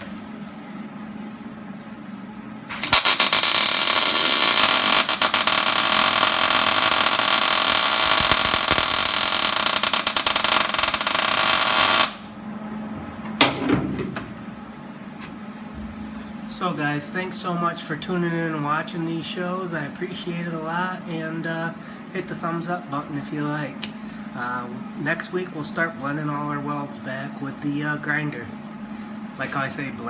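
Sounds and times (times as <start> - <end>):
welding arc crackling: 2.7 - 12.3.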